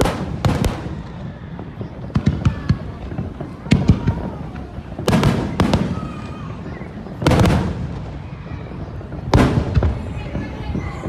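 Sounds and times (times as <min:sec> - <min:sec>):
fireworks bursting with rumble: 0:00.0 - 0:11.0.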